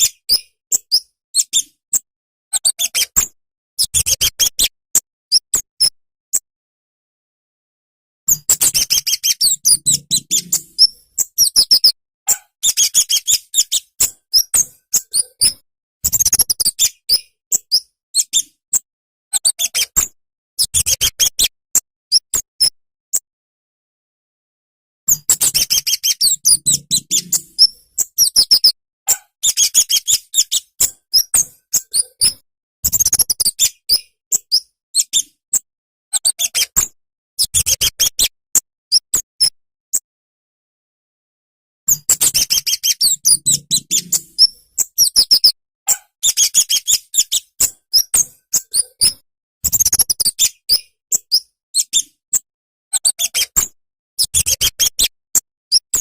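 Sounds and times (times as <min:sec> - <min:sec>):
bird singing sharp high chips: 0:08.3 - 0:18.5, 0:25.1 - 0:32.4, 0:41.9 - 0:49.2.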